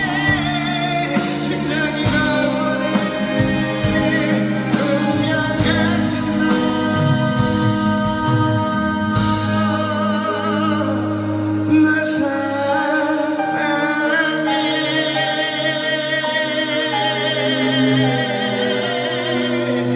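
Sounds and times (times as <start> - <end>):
instrumental accompaniment: 0.0 - 19.9
man singing with vibrato: 0.0 - 19.9.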